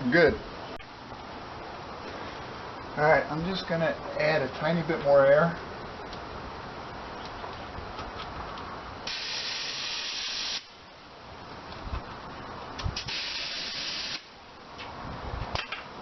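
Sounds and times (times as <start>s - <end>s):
compressed air hissing: 9.0s - 10.7s, 13.0s - 14.3s.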